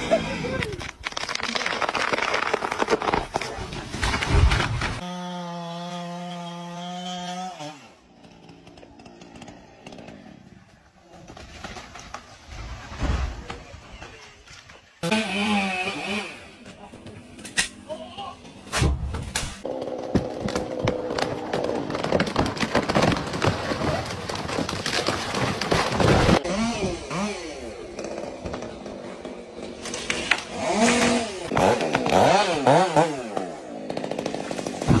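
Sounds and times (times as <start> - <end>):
chainsaw running: 5.0 - 10.6, 15.0 - 16.7, 26.3 - 35.0.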